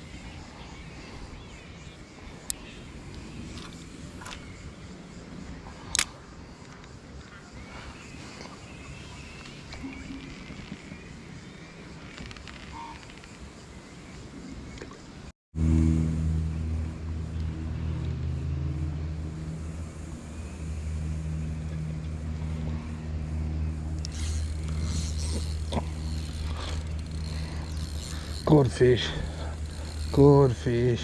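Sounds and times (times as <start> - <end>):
sharp clicks: 5.9 - 7.0
low motor hum with drone: 15.6 - 31.0.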